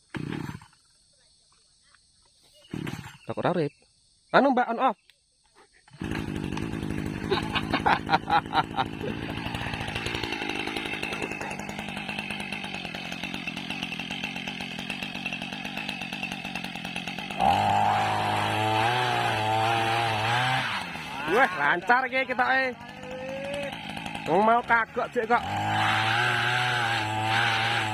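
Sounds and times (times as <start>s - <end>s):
small engine running and revving: 5.9s - 27.9s.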